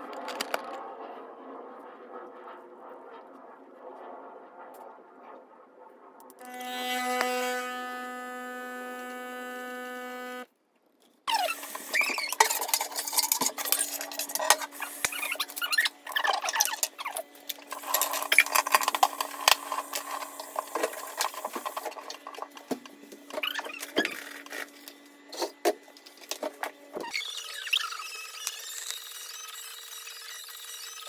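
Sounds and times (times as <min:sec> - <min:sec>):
electric hum: 0:06.4 - 0:10.5, 0:11.3 - 0:29.5.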